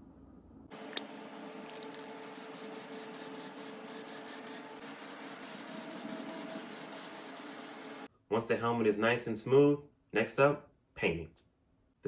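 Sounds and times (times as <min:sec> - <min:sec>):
aerosol can spraying hiss: 0:00.8 - 0:08.1.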